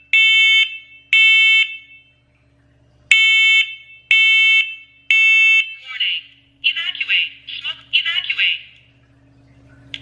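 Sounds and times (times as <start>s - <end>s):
smoke alarm high-pitched beeps: 0.1s - 2.1s, 3.1s - 5.8s.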